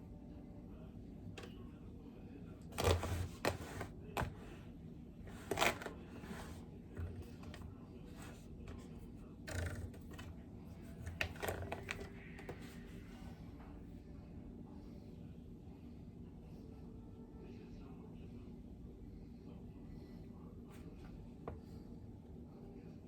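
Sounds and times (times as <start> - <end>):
utensil scraping baking pan: 2.8 - 4.4.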